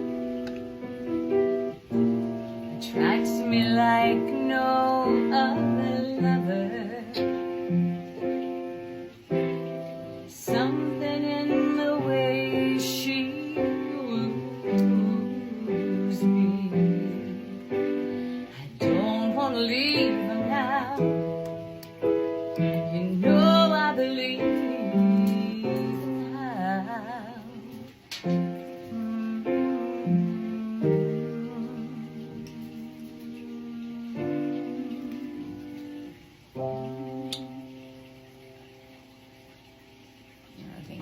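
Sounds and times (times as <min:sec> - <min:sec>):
piano chords: 0:00.0 - 0:41.0
person singing: 0:02.8 - 0:07.6, 0:10.4 - 0:21.6, 0:22.6 - 0:28.0, 0:28.8 - 0:35.8.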